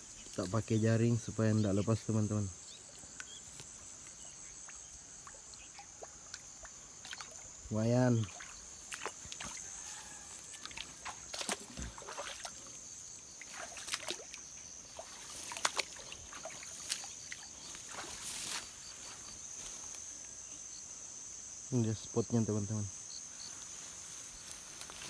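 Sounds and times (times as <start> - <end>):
water sloshing: 2.8 - 20.0.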